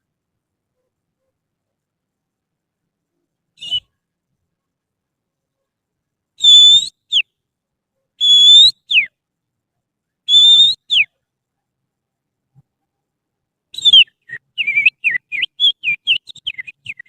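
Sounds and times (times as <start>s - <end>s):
finger whistling birdsong: 3.6s - 3.9s, 6.4s - 7.3s, 8.2s - 9.1s, 10.3s - 11.1s, 13.8s - 17.0s.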